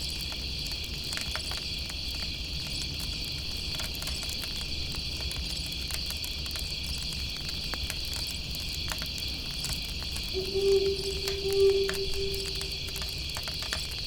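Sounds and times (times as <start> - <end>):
insects chirring: 10.4 - 13.4.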